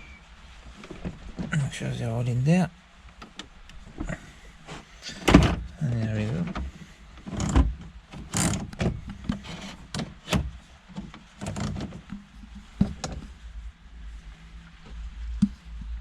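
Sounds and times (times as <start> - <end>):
clicks and knocks of dashboard knobs: 5.2 - 13.3.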